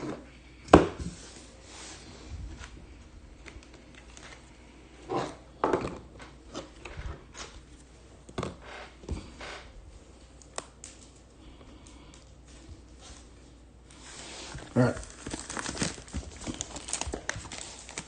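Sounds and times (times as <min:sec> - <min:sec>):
card packs rustling: 0:14.1 - 0:18.0.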